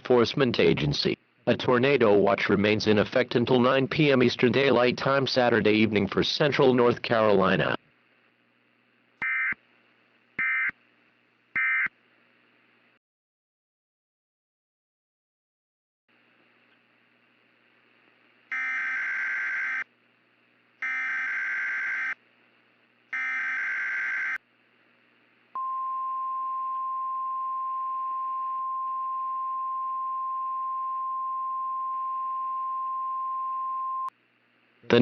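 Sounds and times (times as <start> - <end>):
steady warning alarm tone: 18.5 - 19.9, 20.8 - 22.2, 23.1 - 24.4.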